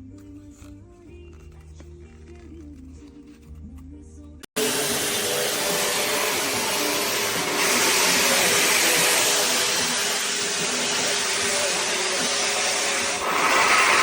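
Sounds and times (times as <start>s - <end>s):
shower head spraying water: 4.6s - 14.0s.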